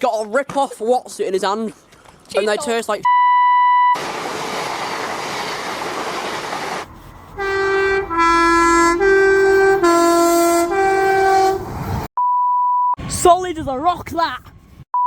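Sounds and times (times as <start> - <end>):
train horn: 7.0 - 12.0.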